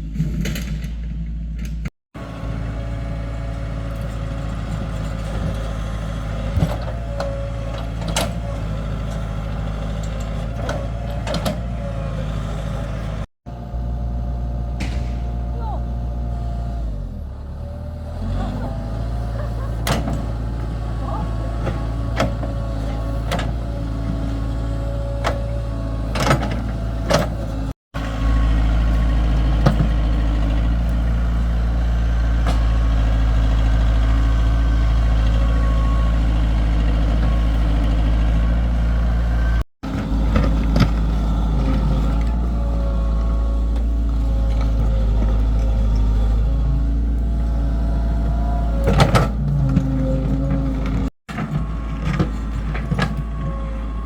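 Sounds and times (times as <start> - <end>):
diesel engine humming: 2.2 - 54.0.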